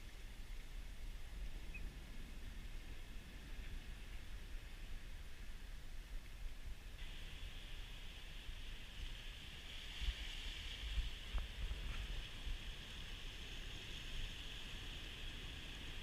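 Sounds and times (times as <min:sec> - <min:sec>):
rough sea rushing hiss: 0:07.0 - 0:16.0
wind buffeting microphone: 0:08.8 - 0:16.0.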